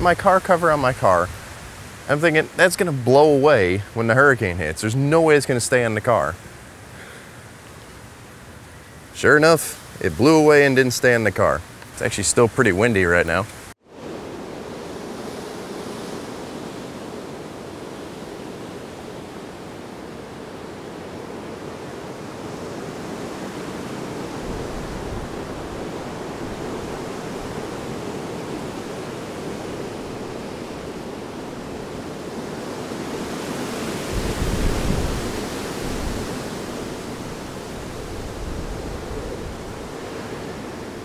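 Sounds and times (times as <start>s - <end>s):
strong wind blowing: 13.9s - 41.0s
wind buffeting microphone: 14.1s - 41.0s.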